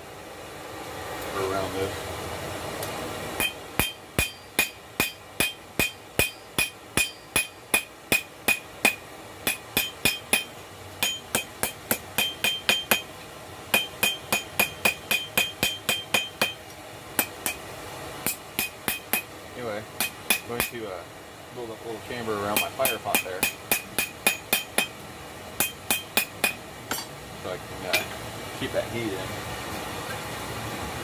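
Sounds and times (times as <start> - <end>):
hammer striking steel on anvil: 3.4 - 13.1, 13.7 - 16.6, 17.2 - 17.6, 18.2 - 19.4, 20.0 - 20.8, 22.5 - 25.0, 25.6 - 27.1.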